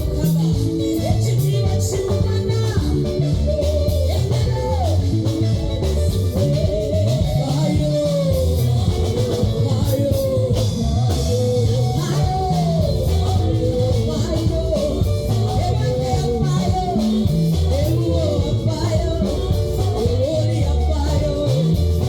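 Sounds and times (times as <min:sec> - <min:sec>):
dance music with lead guitar: 0:00.0 - 0:22.0.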